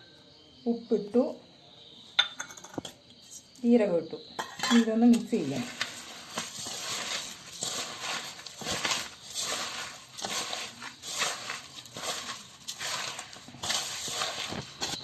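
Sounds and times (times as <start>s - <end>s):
wet squishing mixing in bowl: 5.6s - 15.0s.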